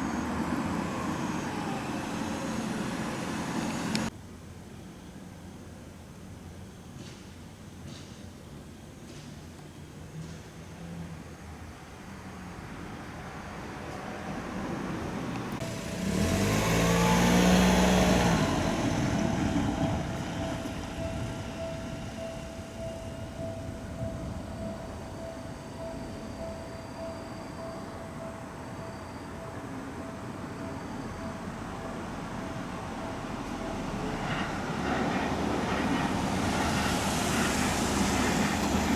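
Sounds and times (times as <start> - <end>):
train passing: 0.0 - 4.1, 10.7 - 38.9
crossing warning bell: 15.6 - 37.5.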